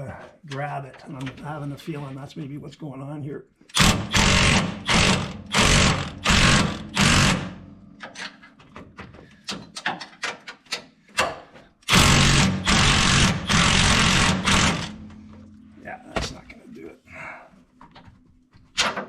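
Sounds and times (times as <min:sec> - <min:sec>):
power tool whirring: 0:03.8 - 0:07.6, 0:11.9 - 0:15.0.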